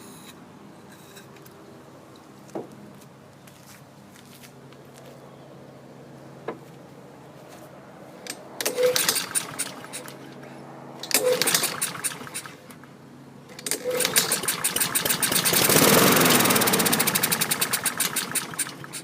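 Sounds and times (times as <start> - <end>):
lawn mower engine pull-starting: 8.3 - 12.9, 13.5 - 19.0.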